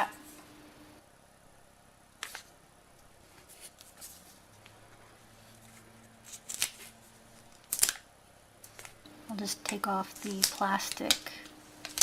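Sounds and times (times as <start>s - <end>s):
packaging rustling and clicks: 5.6s - 9.0s, 9.6s - 12.0s.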